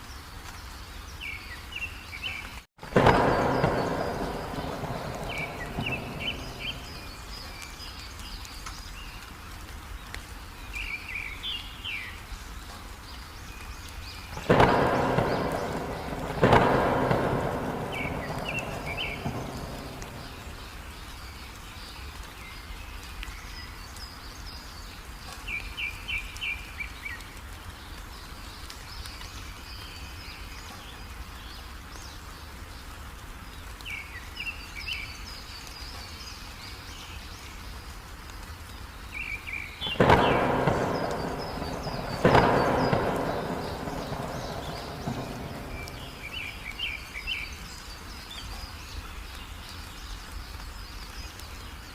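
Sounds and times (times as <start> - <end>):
heavy rain: 0.0 - 51.9
bird chirping: 1.0 - 9.3, 13.2 - 27.2, 39.0 - 51.9
thunderclaps: 2.8 - 8.3, 14.3 - 21.2, 39.1 - 47.6.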